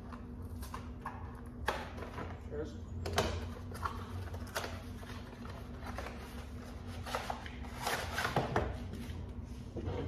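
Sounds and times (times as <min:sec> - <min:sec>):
steady low hum: 0:00.0 - 0:10.0
objects rustling and scraping: 0:03.4 - 0:10.0.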